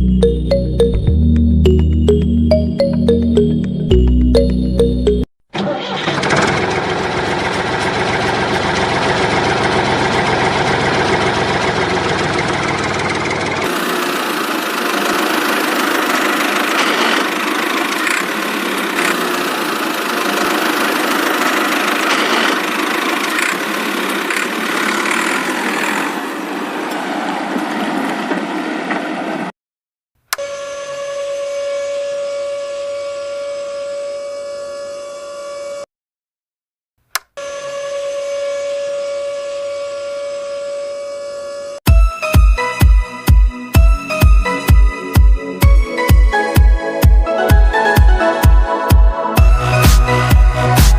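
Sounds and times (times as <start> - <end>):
small electric motor whirring: 13.7 - 26.3.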